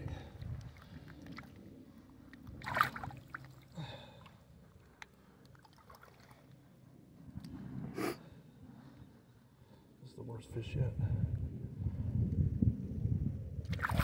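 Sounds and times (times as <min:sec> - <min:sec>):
water splashing: 0:02.5 - 0:03.7, 0:13.7 - 0:14.0.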